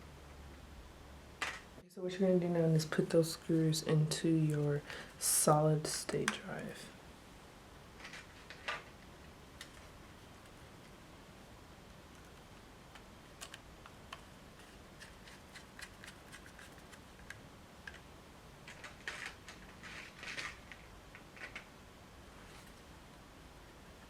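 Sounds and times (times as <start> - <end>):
scratchy handling sounds: 12.1 - 21.7.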